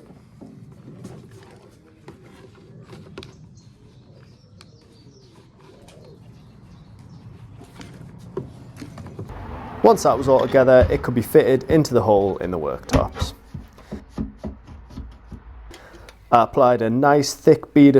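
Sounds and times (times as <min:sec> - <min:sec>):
faint bird calls: 0:02.3 - 0:08.0.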